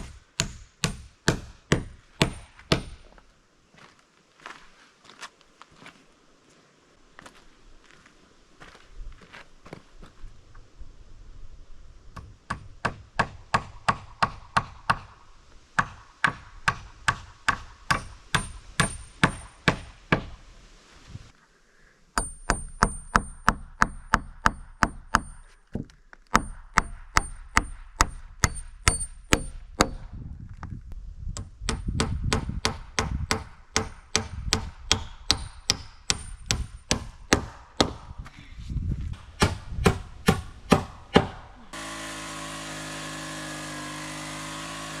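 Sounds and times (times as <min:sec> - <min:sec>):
hammer driving nails into wood: 0:00.0 - 0:03.0, 0:12.5 - 0:15.2, 0:22.2 - 0:30.0, 0:31.6 - 0:38.1, 0:39.2 - 0:45.0.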